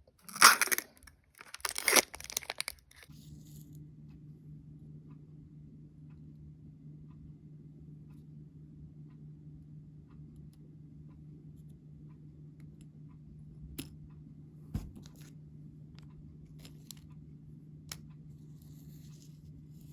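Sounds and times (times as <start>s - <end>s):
faint steady hum: 0.0s - 19.9s
small plastic parts clicking: 0.3s - 3.0s.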